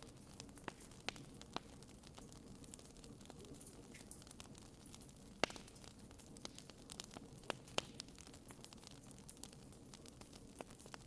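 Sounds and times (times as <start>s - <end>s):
small pops: 0.0s - 2.4s, 5.0s - 11.0s
bonfire crackling: 0.0s - 11.0s
soft hiss: 0.0s - 11.0s.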